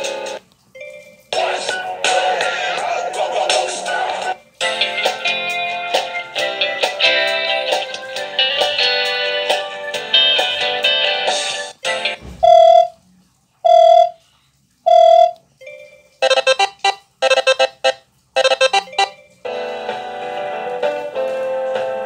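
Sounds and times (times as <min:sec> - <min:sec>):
melodic ringtone: 0:00.0 - 0:02.8, 0:08.6 - 0:13.0, 0:13.6 - 0:14.2, 0:14.9 - 0:20.0
short phone beeps: 0:12.4 - 0:13.0, 0:13.6 - 0:14.2, 0:14.9 - 0:19.2
rapid ringing notes: 0:14.9 - 0:19.3.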